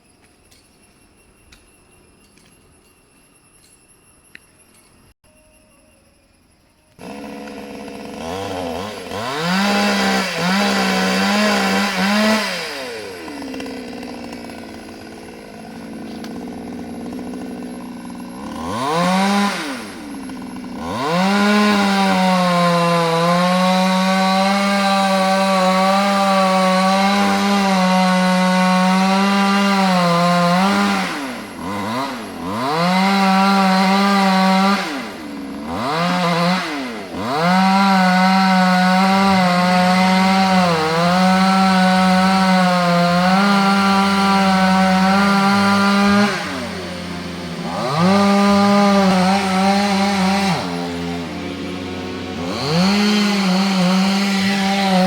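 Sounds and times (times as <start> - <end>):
chainsaw cutting wood: 6.9 - 55.0.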